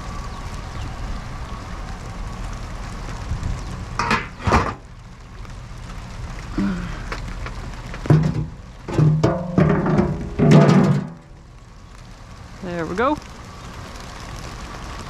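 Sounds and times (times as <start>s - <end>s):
rain falling: 0.0s - 15.0s
handling noises of wet trash: 3.1s - 5.0s, 6.1s - 11.4s.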